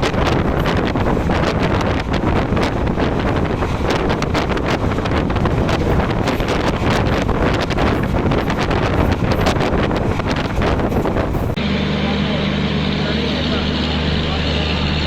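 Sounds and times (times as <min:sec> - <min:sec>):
train wheels clicking and knocking: 0:00.0 - 0:11.6
wind buffeting microphone: 0:00.0 - 0:11.6
train rumbling: 0:00.0 - 0:15.0.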